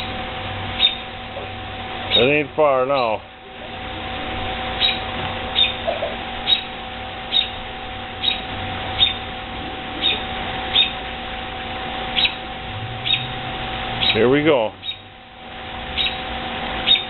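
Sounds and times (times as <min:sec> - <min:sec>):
steady electrical hum: 0:00.0 - 0:17.0
bird chirping: 0:00.8 - 0:01.1, 0:04.8 - 0:06.7, 0:07.3 - 0:07.6, 0:08.2 - 0:09.2, 0:09.9 - 0:11.0, 0:12.1 - 0:12.4, 0:13.0 - 0:13.4, 0:14.8 - 0:15.1, 0:16.0 - 0:16.2.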